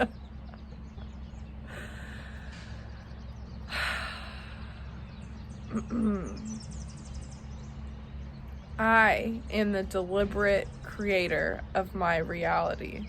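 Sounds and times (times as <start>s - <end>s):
person breathing: 1.7s - 3.0s, 3.7s - 5.0s.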